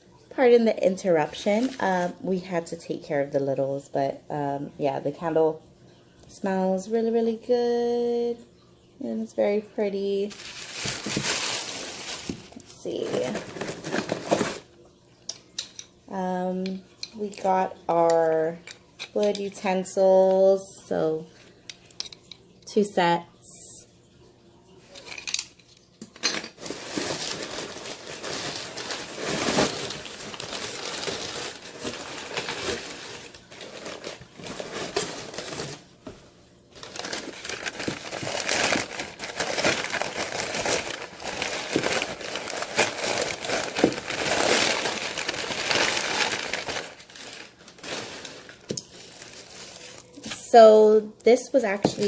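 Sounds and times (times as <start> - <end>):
packaging crinkling and rustling: 1.3 - 2.3, 10.0 - 14.7, 26.3 - 36.2, 36.8 - 50.6.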